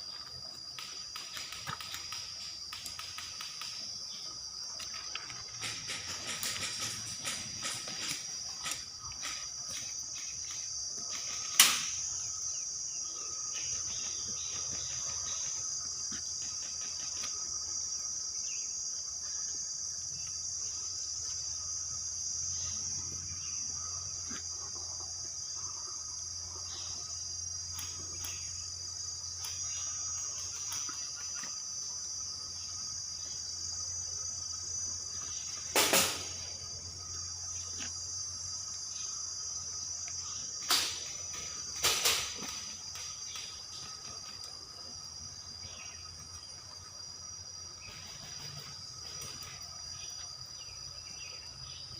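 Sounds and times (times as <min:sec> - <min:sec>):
high-pitched insect chirring: 0:00.0 - 0:51.9
sharp crack: 0:11.5 - 0:12.1.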